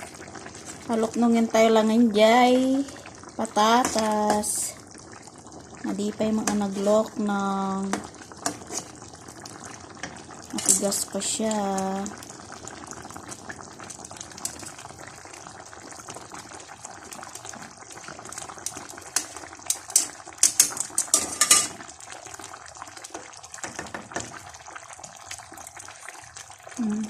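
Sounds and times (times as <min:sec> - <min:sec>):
stew bubbling in a pot: 0:00.0 - 0:27.0
metal utensil scraping a pot: 0:08.4 - 0:09.0, 0:19.2 - 0:21.8.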